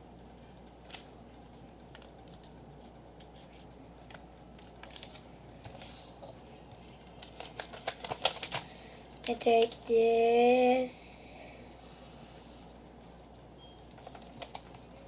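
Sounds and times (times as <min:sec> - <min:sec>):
paper rustling and creasing: 0:03.2 - 0:06.3, 0:07.2 - 0:09.9.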